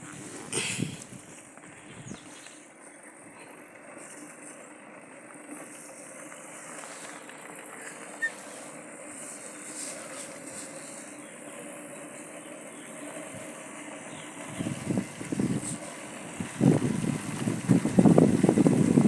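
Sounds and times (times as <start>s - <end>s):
low engine hum: 0.0s - 19.0s
outdoor noise haze: 0.0s - 19.0s.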